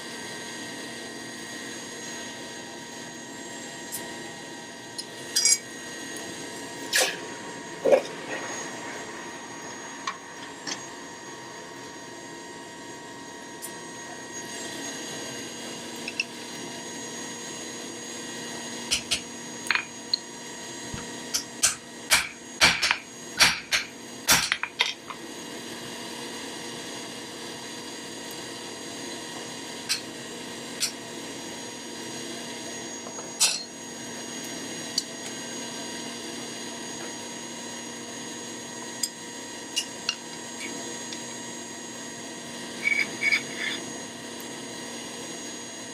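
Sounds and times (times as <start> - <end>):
motor humming: 36.5 - 45.9.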